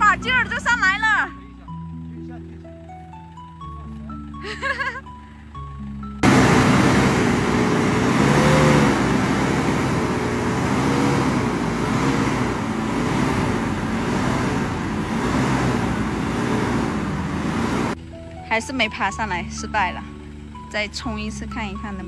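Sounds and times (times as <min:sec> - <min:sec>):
car engine revving: 0:06.2 - 0:18.0.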